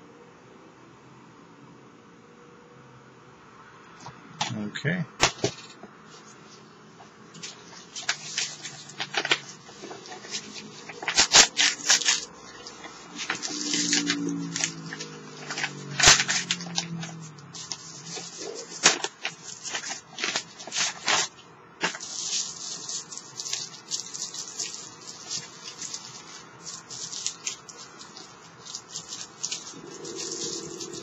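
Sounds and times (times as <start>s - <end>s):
plastic packaging crinkling: 7.3s - 31.0s.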